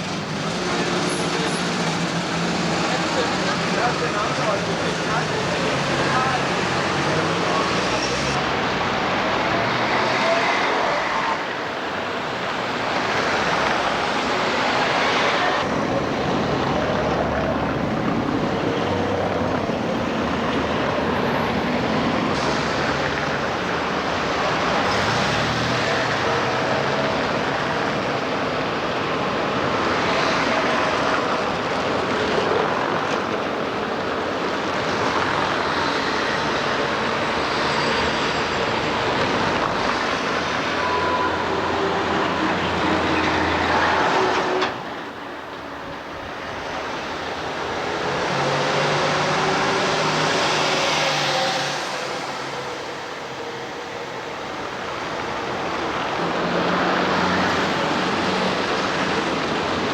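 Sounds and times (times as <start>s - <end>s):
motor vehicles passing: 46.8s - 53.4s.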